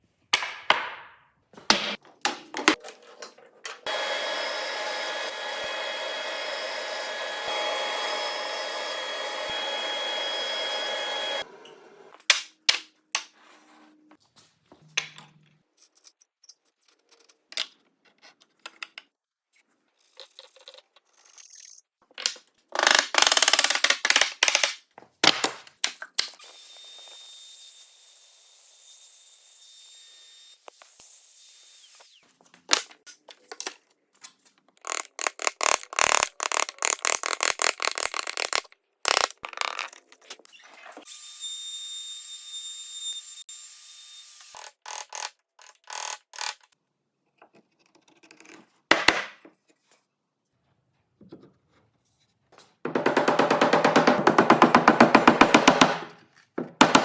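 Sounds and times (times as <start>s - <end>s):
power tool running: 3.8s - 12.2s.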